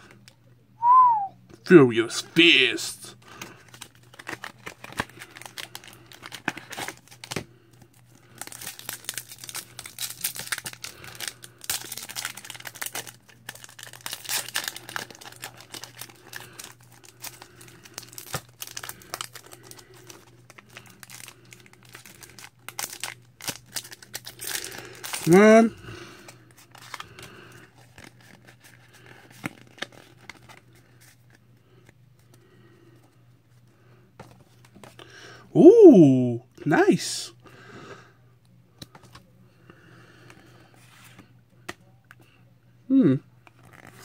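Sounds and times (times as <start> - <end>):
foil wrapper crinkling and tearing: 2.6 - 25.4, 26.2 - 31.3.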